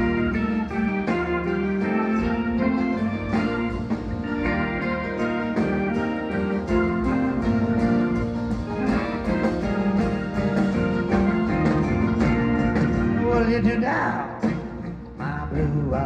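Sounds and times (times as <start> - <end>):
guitar: 0.0 - 16.0
live band playing: 0.0 - 16.0.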